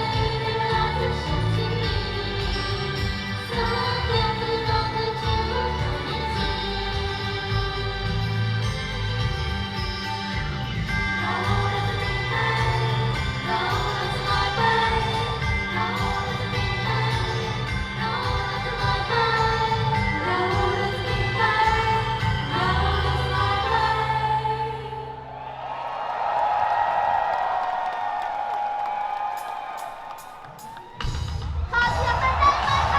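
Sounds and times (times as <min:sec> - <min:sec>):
girls singing pop song in unison: 0:00.0 - 0:08.9, 0:10.8 - 0:25.3.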